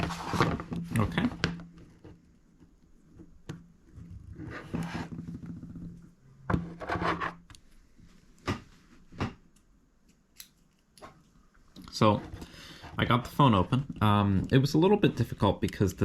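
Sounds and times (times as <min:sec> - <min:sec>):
tools scraping phone screen: 0:06.6 - 0:07.4.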